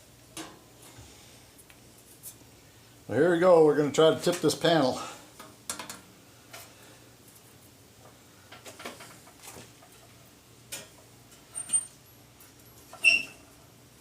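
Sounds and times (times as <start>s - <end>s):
high squeak: 13.0s - 13.4s.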